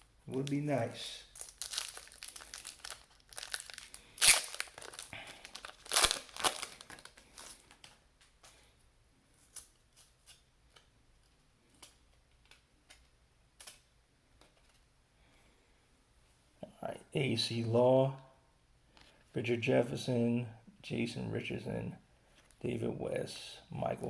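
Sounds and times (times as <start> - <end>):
wrapper tearing and crinkling: 1.2 - 7.8.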